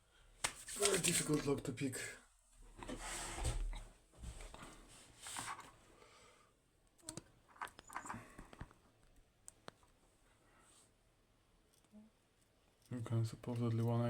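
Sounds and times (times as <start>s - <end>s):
soft rustles of lock picking tools: 6.8s - 10.2s, 11.6s - 14.0s.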